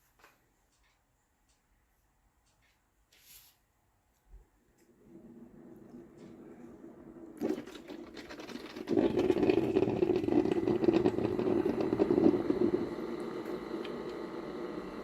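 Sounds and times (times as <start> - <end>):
coffee maker humming and whirring: 5.1 - 15.0.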